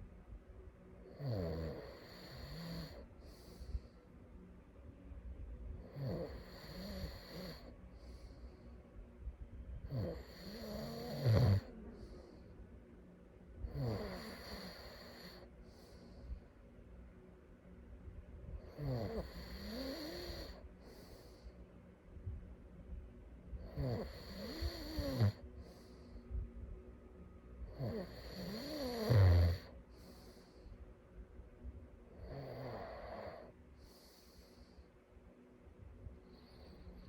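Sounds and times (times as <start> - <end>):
person snoring: 1.1 - 3.6, 5.8 - 7.7, 9.9 - 12.2, 13.7 - 15.5, 18.7 - 21.3, 23.6 - 25.8, 27.7 - 30.4, 32.2 - 34.6
airy breath: 2.9 - 4.4, 7.6 - 9.2, 11.8 - 12.8, 15.0 - 16.8, 20.5 - 21.9, 25.4 - 26.8, 29.7 - 31.2, 33.4 - 35.3.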